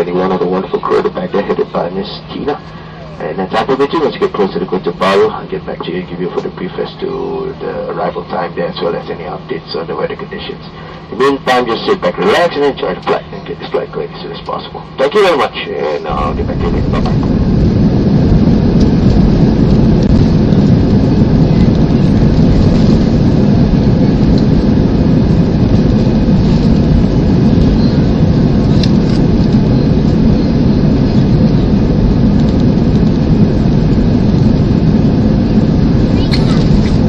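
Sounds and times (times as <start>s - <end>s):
jet engine cabin rumble: 0.0s - 37.0s.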